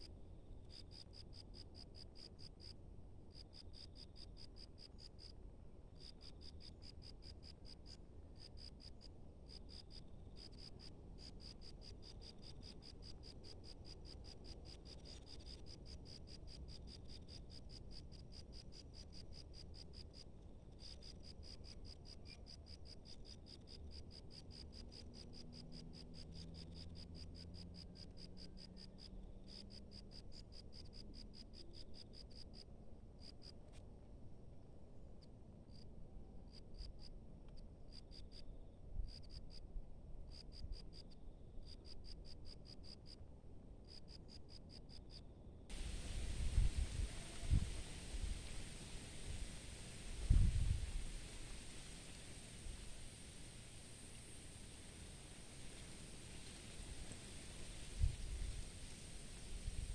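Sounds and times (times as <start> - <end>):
cricket chirping: 0.0 - 33.7, 35.2 - 39.7, 40.3 - 43.2, 43.8 - 59.9
faint low rumble: 45.6 - 59.9.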